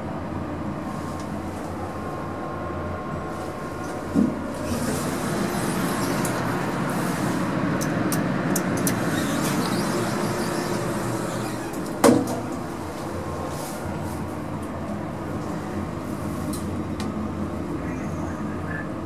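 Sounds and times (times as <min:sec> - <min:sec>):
lift mechanical hum: 0:00.0 - 0:19.0.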